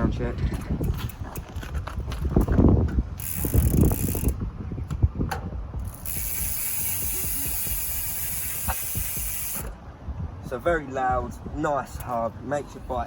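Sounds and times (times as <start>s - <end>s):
bicycle freewheel buzzing: 3.2s - 4.4s, 5.8s - 9.8s.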